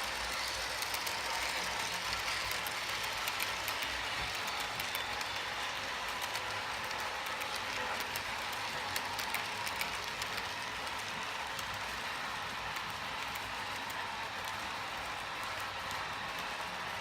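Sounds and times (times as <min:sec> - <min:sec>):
model train rolling on track: 0:00.0 - 0:17.0
wheels clicking on rails: 0:00.0 - 0:17.0.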